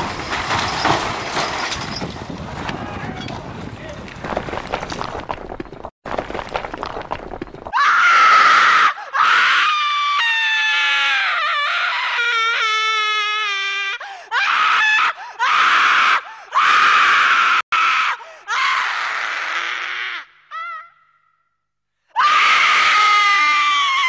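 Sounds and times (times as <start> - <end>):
loud harsh screams: 7.8 - 13.3, 14.3 - 20.9, 22.2 - 24.0.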